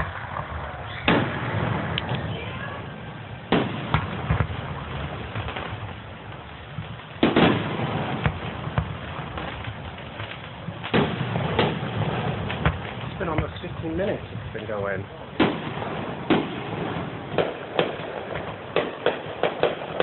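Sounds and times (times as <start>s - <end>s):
fireworks bangs: 0.0s - 20.0s
fireworks crackles and rumble: 0.0s - 20.0s.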